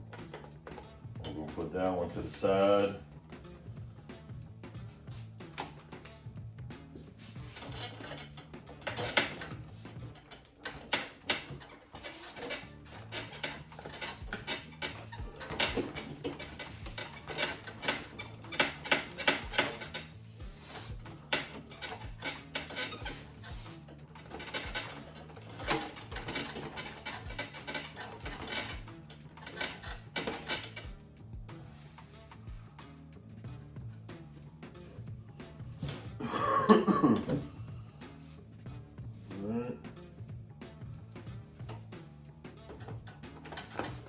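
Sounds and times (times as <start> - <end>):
background music: 0.0 - 44.0
clicks and clatter of small parts: 7.6 - 31.0, 42.7 - 44.0.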